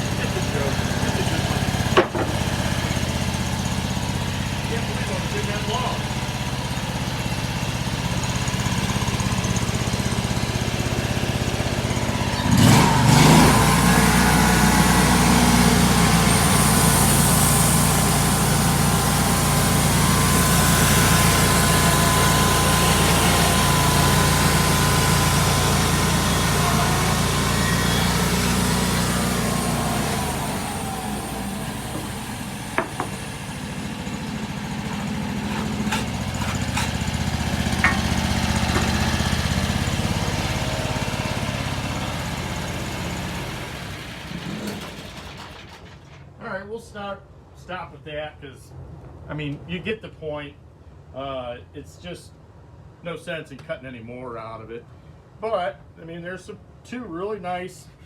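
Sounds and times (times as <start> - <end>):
saw blade whining through log: 0.0 - 46.3
sawmill engine running: 0.0 - 46.4.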